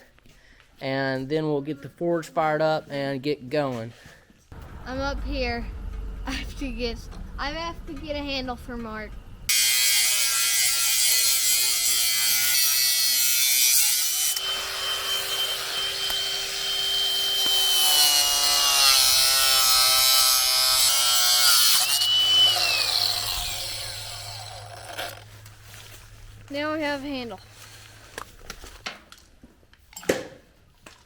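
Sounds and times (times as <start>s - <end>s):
power tool motor whine: 14.0s - 25.2s.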